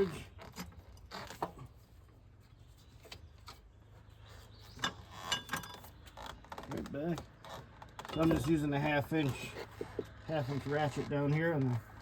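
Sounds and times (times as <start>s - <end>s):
hand tools clicking and knocking: 8.0s - 11.8s.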